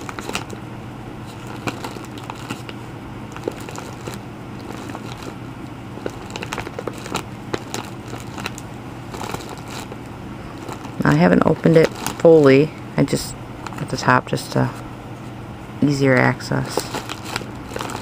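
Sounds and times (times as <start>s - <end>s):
plastic wrapping crinkling: 0.0s - 0.6s, 1.2s - 5.4s, 6.0s - 12.5s, 16.2s - 18.0s
steady low hum: 0.0s - 18.0s.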